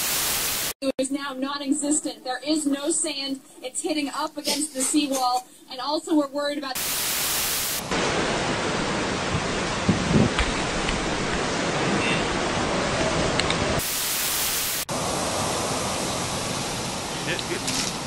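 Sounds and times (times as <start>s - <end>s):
harsh static-like hiss: 0.0s - 0.8s, 6.8s - 11.8s, 13.8s - 18.0s
hurricane wind: 7.8s - 14.0s, 14.8s - 18.0s.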